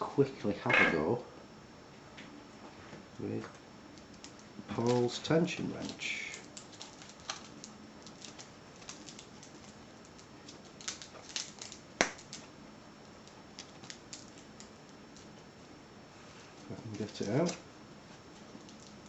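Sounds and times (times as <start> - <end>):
plastic packaging handled: 4.1 - 12.5, 13.2 - 15.3.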